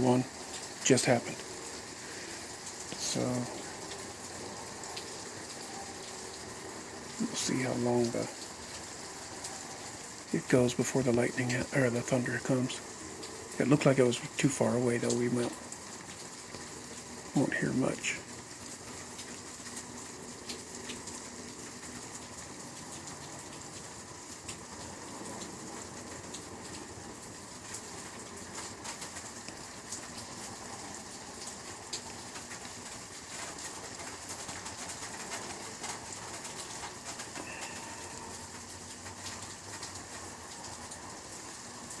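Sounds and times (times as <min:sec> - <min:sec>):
night ambience hiss: 0:00.0 - 0:42.0.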